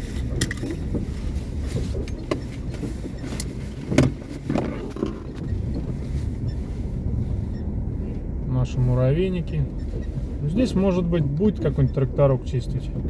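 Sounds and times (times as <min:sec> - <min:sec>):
creaks and squeaks: 0:00.0 - 0:08.2, 0:09.7 - 0:10.4
road rumble in car cabin: 0:00.0 - 0:13.0.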